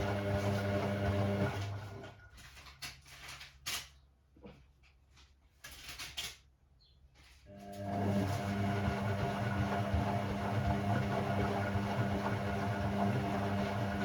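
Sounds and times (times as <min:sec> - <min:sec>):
washing machine hum: 0:00.0 - 0:02.5, 0:07.5 - 0:14.0.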